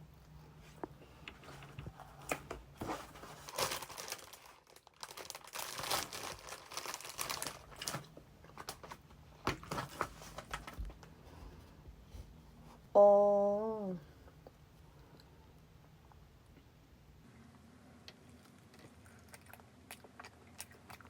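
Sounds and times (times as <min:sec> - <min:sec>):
plastic packaging crinkling and tearing: 0:02.2 - 0:09.0, 0:09.6 - 0:10.8.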